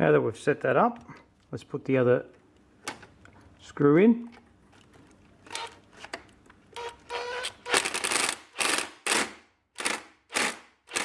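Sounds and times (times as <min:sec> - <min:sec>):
cordless drill driving screw into metal: 0:06.8 - 0:11.0.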